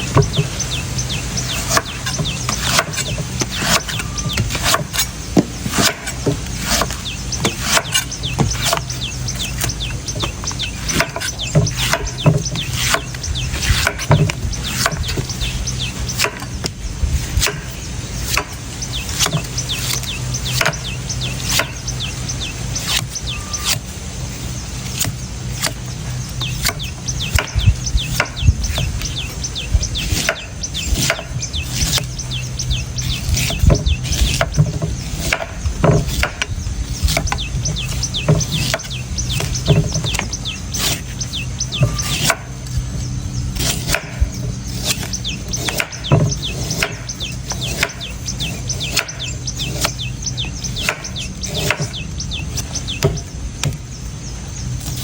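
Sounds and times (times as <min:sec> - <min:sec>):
birds chirping: 0:00.0 - 0:55.0
knife chopping coconut: 0:01.5 - 0:15.3, 0:16.1 - 0:20.8, 0:24.8 - 0:25.8, 0:30.0 - 0:32.2, 0:33.3 - 0:41.2, 0:41.8 - 0:42.6, 0:43.5 - 0:50.0, 0:50.8 - 0:53.8.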